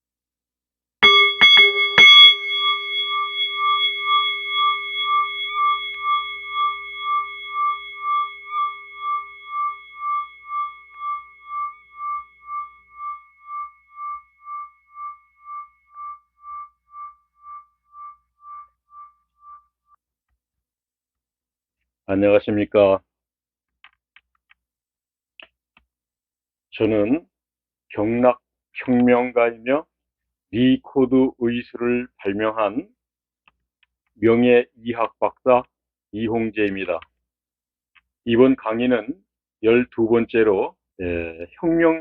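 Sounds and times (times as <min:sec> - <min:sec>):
bell struck and ringing: 0:01.0 - 0:19.7.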